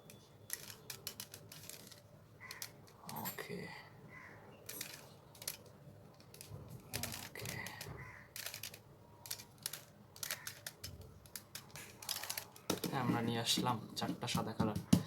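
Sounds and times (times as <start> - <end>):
puzzle cube clicking: 0.0 - 3.2, 4.7 - 13.0.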